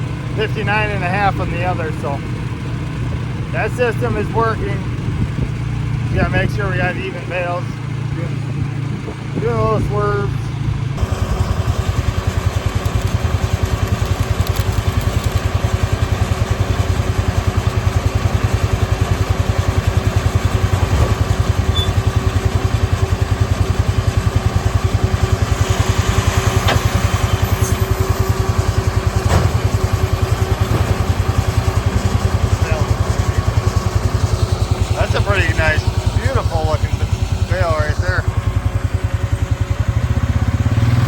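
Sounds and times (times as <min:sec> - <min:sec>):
tractor engine pulling baler: 0:00.0 - 0:41.0.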